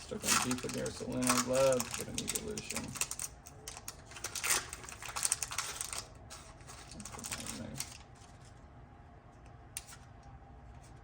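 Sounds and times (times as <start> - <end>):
foil wrapper crinkling: 0.0 - 8.6.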